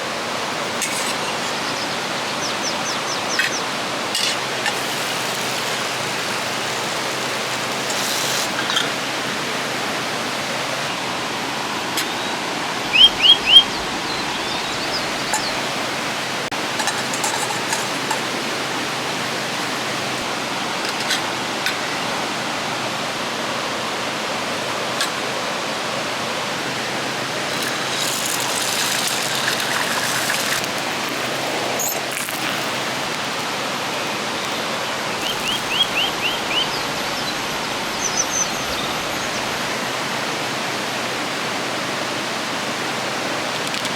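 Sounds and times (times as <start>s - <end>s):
river water rushing: 0.0s - 43.9s
bird chirping: 0.8s - 3.7s, 12.9s - 15.7s, 35.1s - 39.5s.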